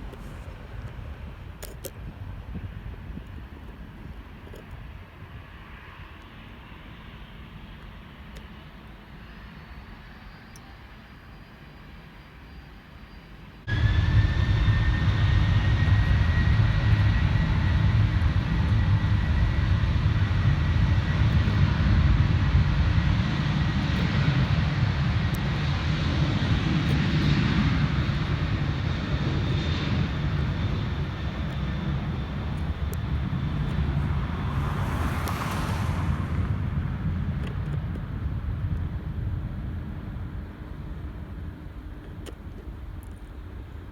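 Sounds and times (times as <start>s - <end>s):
jet engines roaring: 13.7s - 41.8s.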